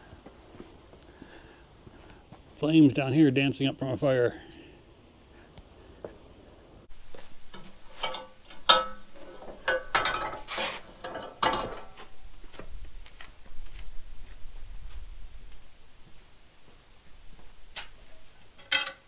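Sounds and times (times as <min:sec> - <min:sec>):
sharp knocks and clinks: 0:07.0 - 0:12.1, 0:17.8 - 0:19.0.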